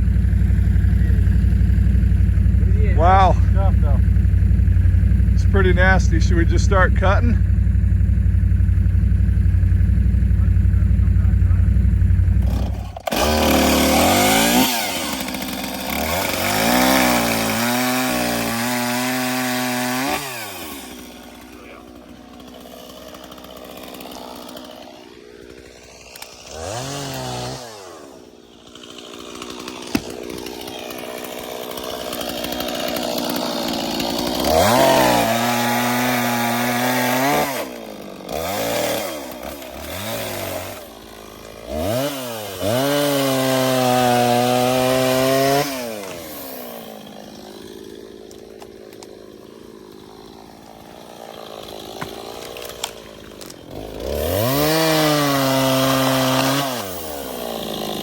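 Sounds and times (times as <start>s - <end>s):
chainsaw revving while cutting: 0.0s - 58.0s.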